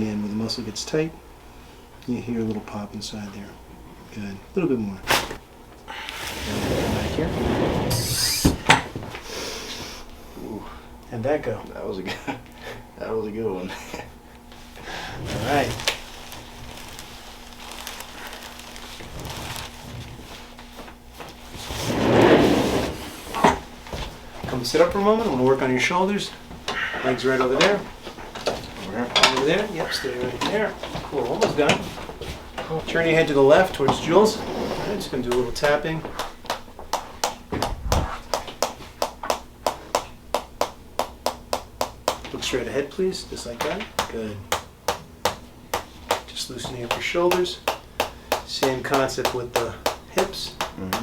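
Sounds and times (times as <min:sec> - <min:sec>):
steady low hum: 0:00.0 - 0:51.0
faint rustling movement: 0:14.4 - 0:39.0
hands tapping on shoulders: 0:34.9 - 0:42.6, 0:43.4 - 0:51.0.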